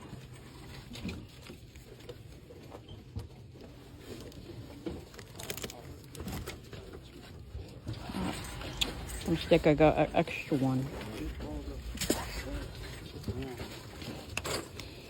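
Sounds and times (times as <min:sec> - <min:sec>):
packaging crinkle: 0:04.0 - 0:06.7.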